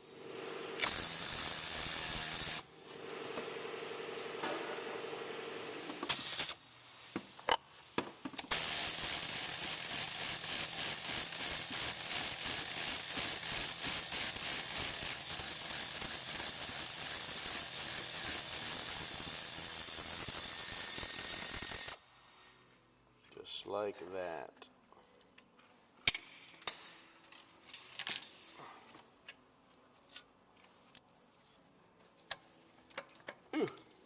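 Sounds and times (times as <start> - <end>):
power tool rattling: 0.8 - 2.6, 8.5 - 22.0.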